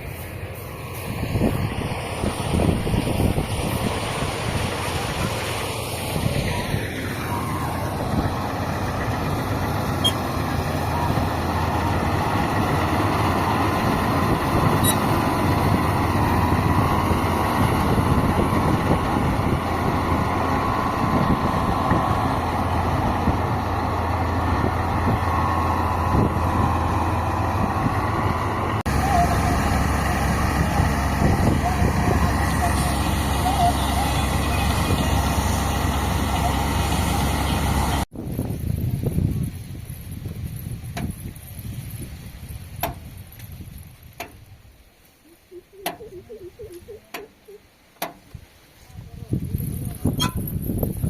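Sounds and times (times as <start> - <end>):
tractor diesel engine running: 0.0 - 44.7.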